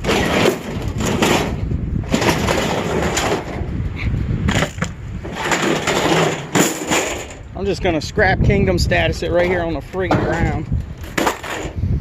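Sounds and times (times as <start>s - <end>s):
scrap metal clattering: 0.0s - 3.8s, 4.5s - 7.5s, 9.4s - 11.9s
wind buffeting microphone: 0.0s - 12.0s.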